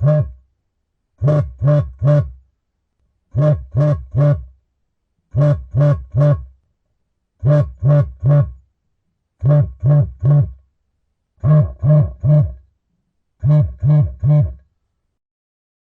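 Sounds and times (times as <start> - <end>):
mobile phone vibrating: 0.0 - 0.4, 1.2 - 2.4, 3.3 - 4.5, 7.4 - 8.6, 9.4 - 10.6, 11.4 - 12.6, 13.4 - 14.6.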